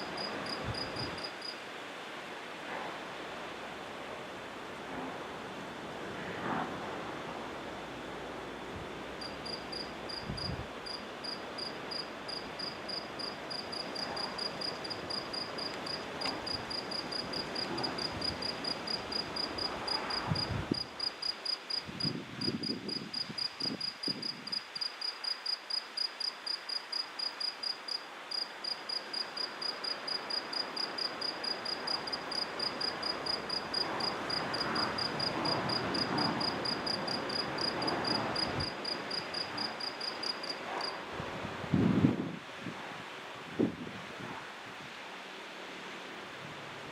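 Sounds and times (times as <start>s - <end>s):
cricket chirping: 0.0s - 1.6s, 9.2s - 41.0s
soft background hiss: 0.0s - 46.9s.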